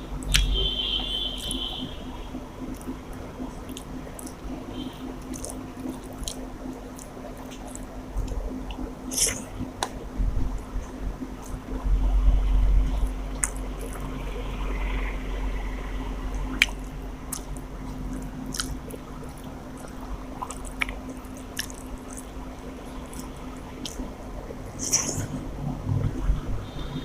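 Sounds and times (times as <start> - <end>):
mouth clicks: 0.2 - 0.6, 16.5 - 22.3, 24.8 - 25.3
person chewing food: 2.6 - 10.0, 13.0 - 14.2, 16.4 - 24.2, 24.8 - 25.3
low rumble: 8.1 - 21.0, 22.2 - 27.0.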